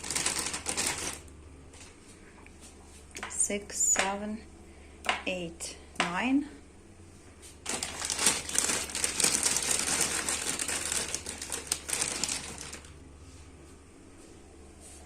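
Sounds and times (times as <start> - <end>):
plastic packet crinkling: 0.0 - 1.3, 7.6 - 13.0.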